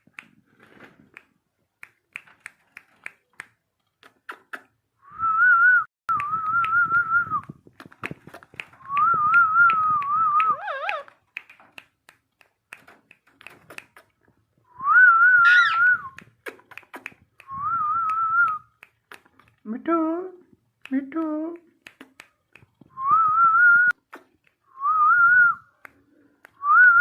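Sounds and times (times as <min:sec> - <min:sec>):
wavering whistle: 0:14.8 - 0:16.2.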